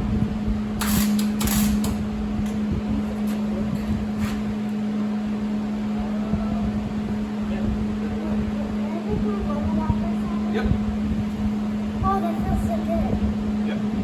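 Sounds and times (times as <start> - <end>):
electric welder humming: 0.6 - 5.9.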